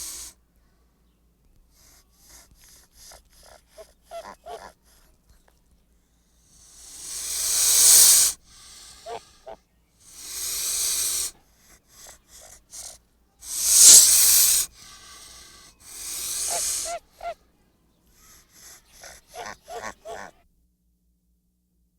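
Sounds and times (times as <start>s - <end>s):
goose hissing: 0.0s - 0.3s, 6.6s - 17.4s, 18.2s - 20.3s
goose calls: 3.8s - 4.8s, 6.9s - 9.6s, 10.2s - 11.3s, 13.5s - 17.4s, 18.2s - 20.3s.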